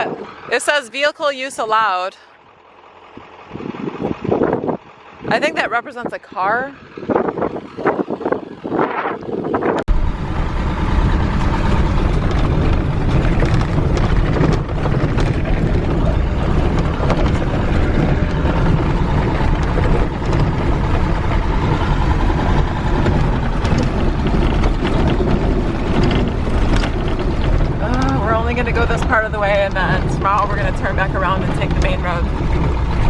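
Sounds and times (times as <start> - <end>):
van driving on dirt road: 0.0 - 33.0
rattles and knocks: 9.9 - 33.0.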